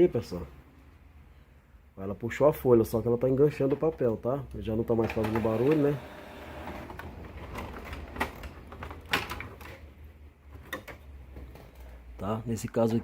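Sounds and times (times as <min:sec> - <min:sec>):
printer paper-feed clicks: 0:05.0 - 0:08.5
inkjet printer humming: 0:05.1 - 0:07.0.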